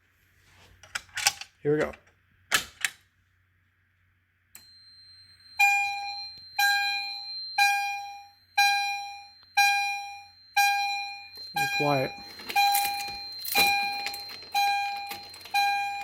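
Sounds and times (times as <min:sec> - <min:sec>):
high steady tone: 0:04.6 - 0:16.0
ringing alarm chime strokes: 0:04.6 - 0:16.0.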